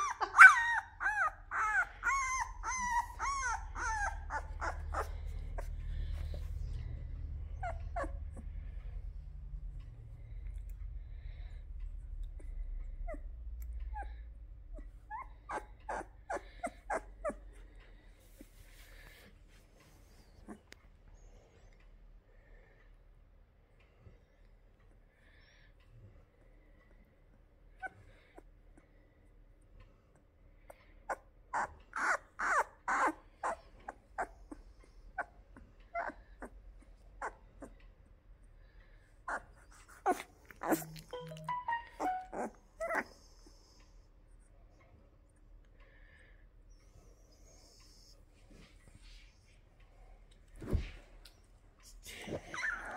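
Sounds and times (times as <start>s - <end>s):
puppy squeaking: 0.0s - 8.6s, 12.4s - 17.6s, 31.1s - 37.8s, 39.2s - 43.6s, 52.5s - 52.9s.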